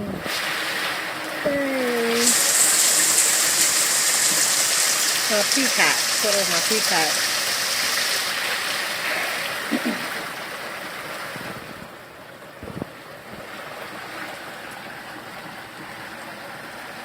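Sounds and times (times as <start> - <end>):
heavy rain pouring: 0.0 - 12.3.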